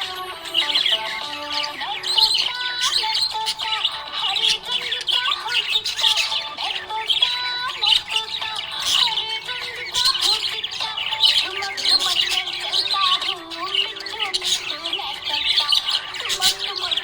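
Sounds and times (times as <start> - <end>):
instrumental melody: 0.0 - 4.6
budgerigar chirping: 0.0 - 17.0.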